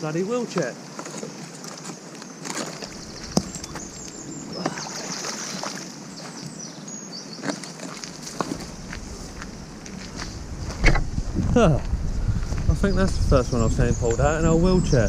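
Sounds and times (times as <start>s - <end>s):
steady outdoor noise: 0.0s - 15.0s.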